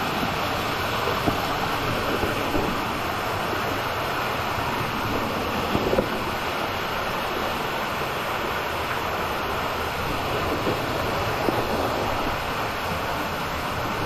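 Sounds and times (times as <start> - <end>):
stream water cascading over rocks: 0.0 - 14.0.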